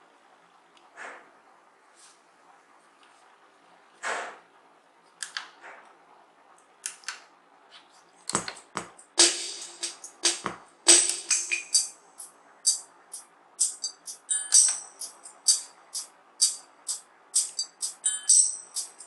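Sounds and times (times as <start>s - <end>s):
keyboard drum and cymbal hits: 8.3s - 19.0s.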